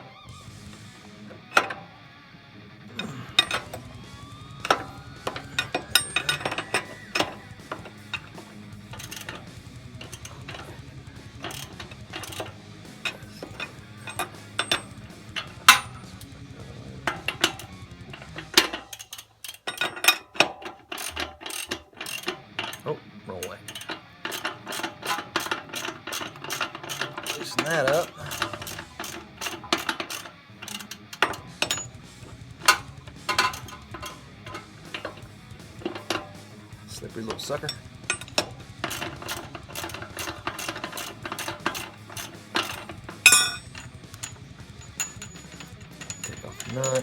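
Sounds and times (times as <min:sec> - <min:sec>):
metal tools clinking: 0:00.7 - 0:02.0, 0:02.9 - 0:47.0
wrench ratcheting: 0:00.7 - 0:02.0, 0:02.9 - 0:47.0.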